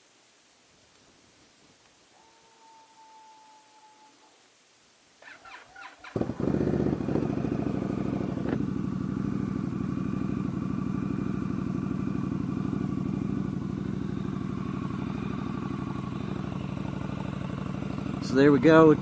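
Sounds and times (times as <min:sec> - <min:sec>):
motorcycle engine idling: 0:06.0 - 0:19.0.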